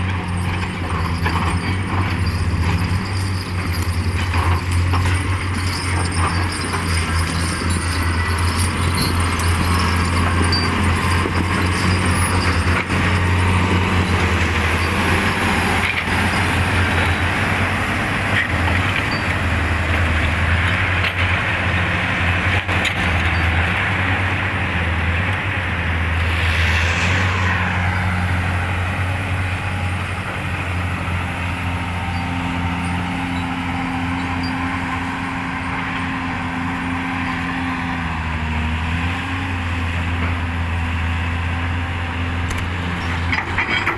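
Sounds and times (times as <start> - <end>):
heavy machinery diesel engine droning: 0.0 - 43.9
brief hiss: 26.1 - 29.1.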